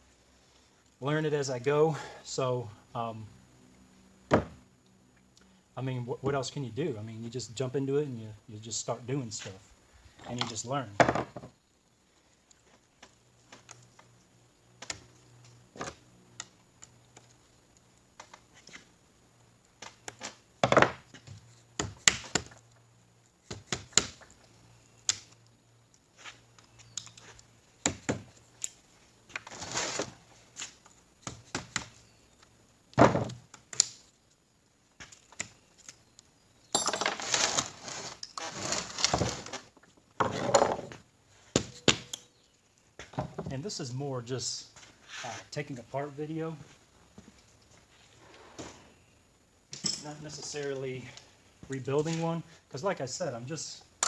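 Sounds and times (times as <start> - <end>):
metal tools clinking on workbench: 36.7 - 37.3, 49.7 - 50.4.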